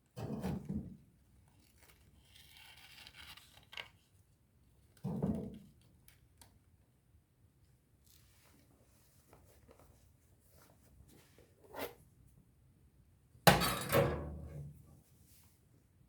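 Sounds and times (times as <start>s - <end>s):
loud thunk of hard object: 13.5s - 14.3s.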